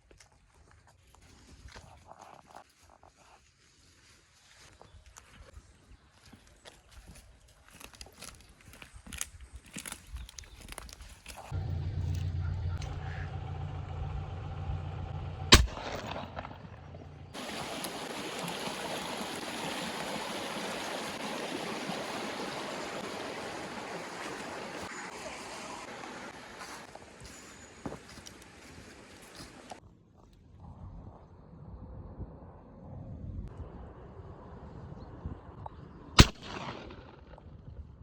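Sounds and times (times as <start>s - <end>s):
low steady hum: 11.6s - 17.4s
loud sharp bang: 15.5s - 16.7s.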